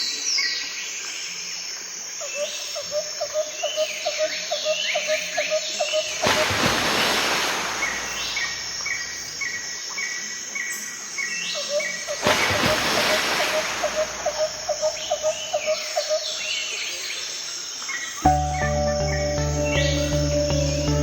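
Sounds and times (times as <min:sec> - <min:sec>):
faint insects: 0:00.0 - 0:21.0.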